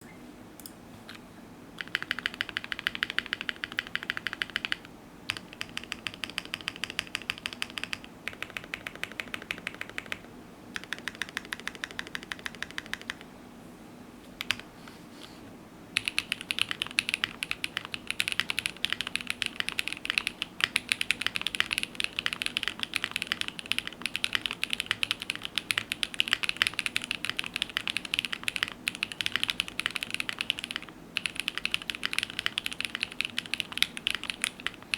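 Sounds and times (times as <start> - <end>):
fast typing on mechanical keyboard: 1.8 - 13.3, 14.4 - 14.6, 16.0 - 34.9.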